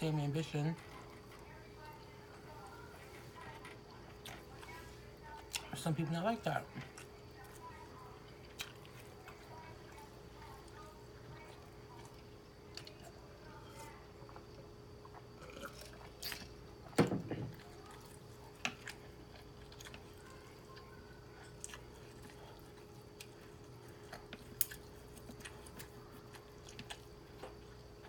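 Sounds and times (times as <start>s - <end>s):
person chewing food: 6.6s - 17.0s, 17.6s - 28.0s.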